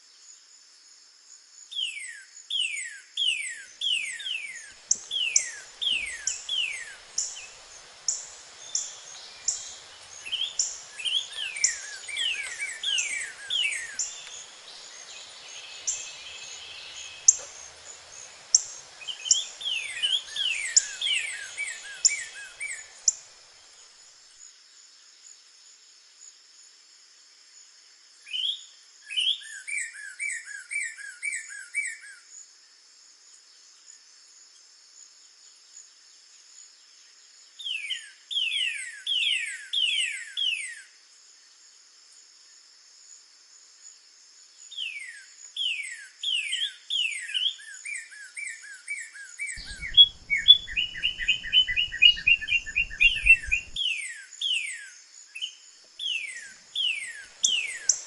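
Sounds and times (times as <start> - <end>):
bird singing whistles: 44.8 - 58.0.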